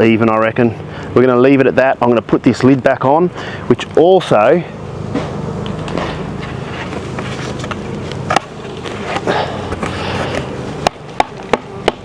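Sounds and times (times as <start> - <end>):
bees buzzing: 3.3 - 12.0.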